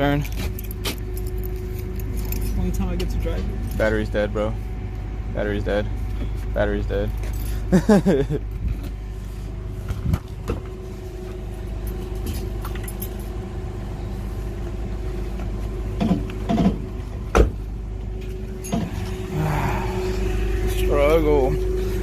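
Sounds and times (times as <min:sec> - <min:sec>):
forklift engine idling: 0:00.0 - 0:22.0.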